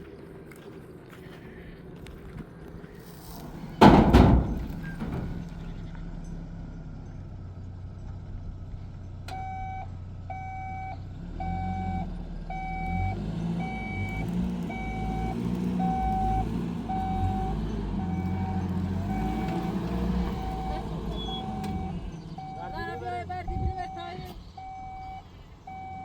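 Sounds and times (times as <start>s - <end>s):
vehicle engine running: 0.0s - 26.0s
vehicle reversing alarm beeping: 9.2s - 26.0s.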